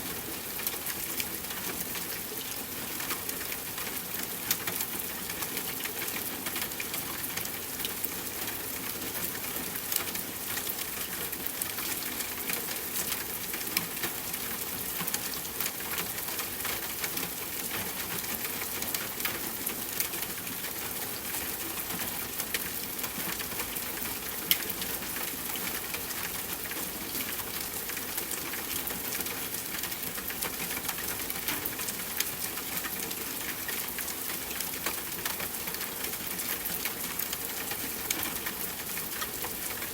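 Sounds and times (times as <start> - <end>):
soft rainfall: 0.0 - 39.9
raindrop ticks: 27.6 - 39.8.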